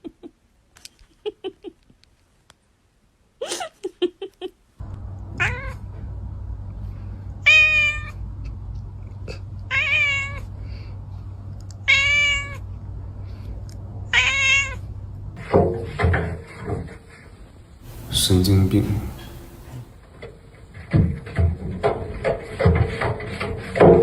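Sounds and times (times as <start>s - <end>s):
steady low hum: 4.8s - 9.7s, 17.8s - 20.0s
cat meowing: 5.4s - 5.8s, 7.4s - 8.2s, 9.7s - 10.5s, 11.8s - 12.6s, 14.1s - 14.9s.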